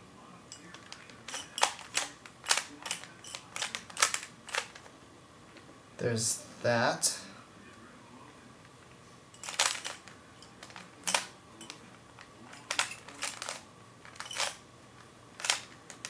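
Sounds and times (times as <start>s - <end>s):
puzzle cube plastic clicking: 0.7s - 4.9s, 9.5s - 11.8s, 12.6s - 14.6s, 15.4s - 16.0s.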